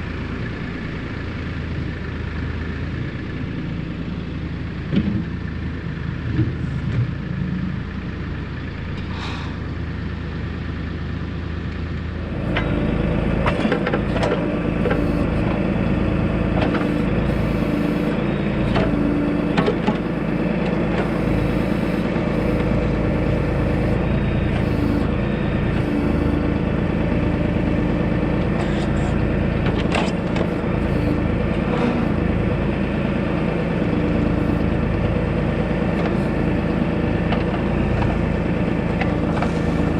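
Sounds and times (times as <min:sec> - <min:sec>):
tractor engine running: 0:00.0 - 0:39.9
knocks of digging dirt: 0:16.5 - 0:22.1, 0:28.6 - 0:32.2.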